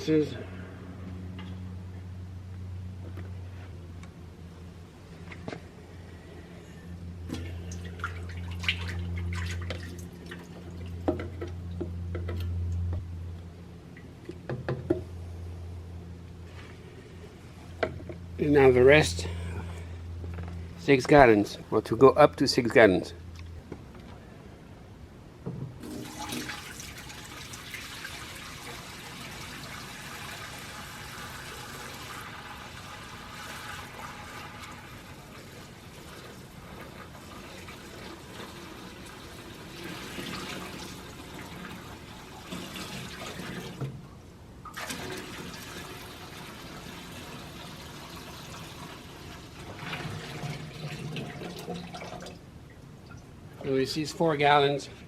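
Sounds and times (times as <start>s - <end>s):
water pouring into metal tank: 25.8s - 43.8s, 44.7s - 52.4s.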